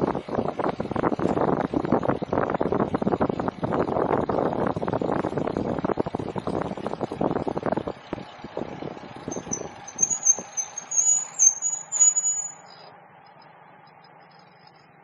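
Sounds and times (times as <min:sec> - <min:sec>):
wind buffeting microphone: 0:00.0 - 0:12.5
bicycle brakes squealing: 0:09.2 - 0:12.9.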